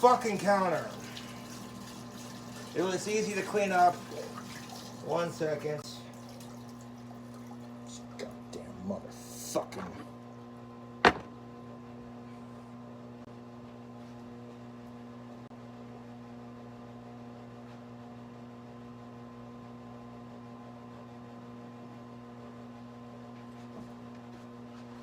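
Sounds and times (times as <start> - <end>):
electrical hum: 0.0 - 16.4.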